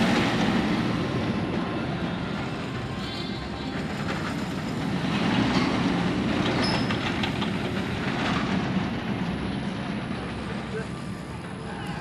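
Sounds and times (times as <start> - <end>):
roller coaster wheels rumbling: 0.0 - 12.0
high wheel squeals: 6.6 - 7.2.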